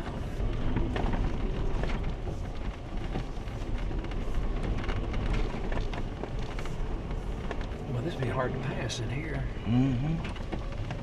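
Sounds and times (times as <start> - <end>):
small knocks and crackles: 0.0 - 9.4, 10.2 - 11.0
vehicle rumble: 0.0 - 11.0.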